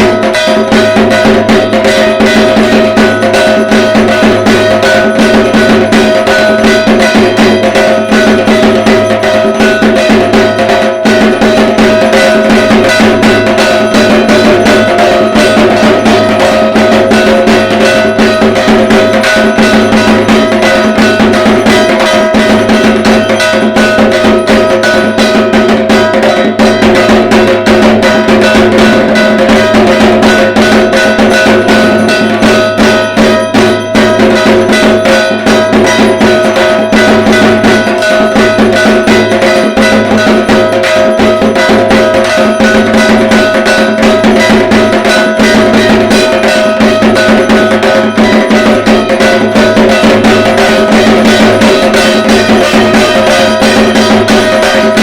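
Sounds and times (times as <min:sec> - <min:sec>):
drums beaten in fast rhythm: 0:00.0 - 0:55.0
ringing metal percussion: 0:00.0 - 0:55.0.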